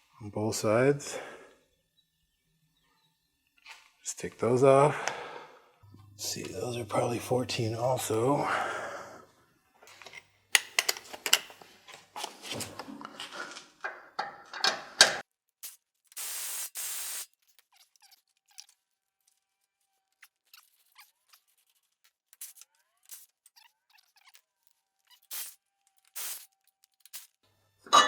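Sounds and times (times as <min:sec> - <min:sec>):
wrench clicking on metal: 0:10.6 - 0:11.5.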